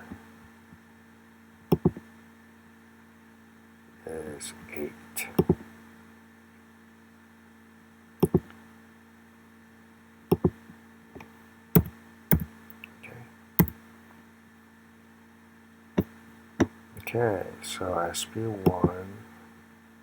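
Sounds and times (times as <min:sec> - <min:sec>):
faint electrical hum: 0:00.0 - 0:20.0
computer clicks and taps: 0:01.7 - 0:02.1, 0:05.3 - 0:05.7, 0:08.2 - 0:08.6, 0:10.3 - 0:10.6, 0:11.2 - 0:12.9.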